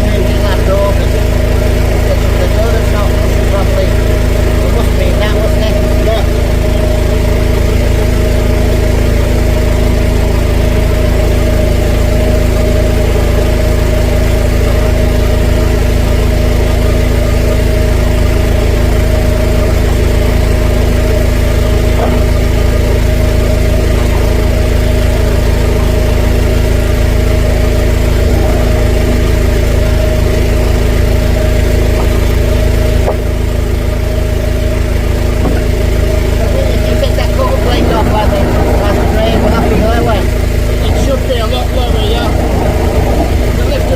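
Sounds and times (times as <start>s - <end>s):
engine running steadily: 0.0s - 43.9s.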